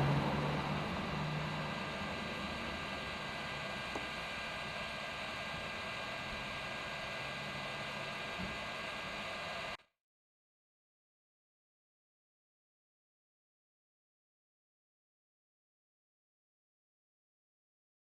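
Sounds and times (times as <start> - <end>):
faint hum: 0.0 - 9.8
hot-air station hissing: 0.0 - 9.8.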